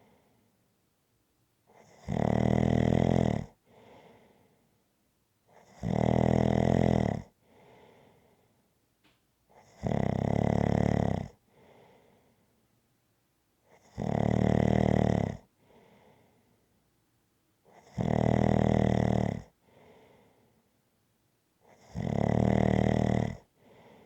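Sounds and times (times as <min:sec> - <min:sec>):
person snoring: 0:01.8 - 0:03.5, 0:09.6 - 0:11.4, 0:13.8 - 0:15.4, 0:17.8 - 0:19.5, 0:21.8 - 0:23.5
soft breath out: 0:03.6 - 0:04.7, 0:07.4 - 0:08.6, 0:11.5 - 0:12.6, 0:15.6 - 0:16.7, 0:19.6 - 0:20.7, 0:23.6 - 0:24.0.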